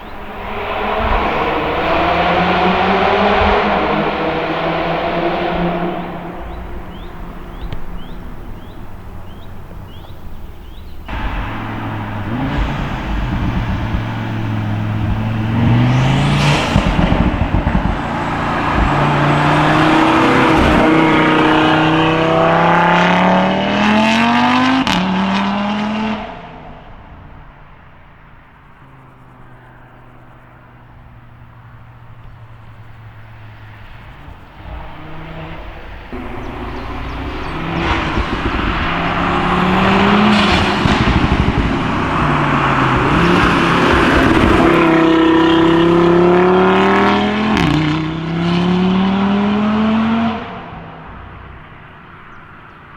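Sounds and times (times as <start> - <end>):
exhaust pops crackling: 0.0 - 25.2, 27.2 - 49.1
car engine revving: 0.0 - 52.9.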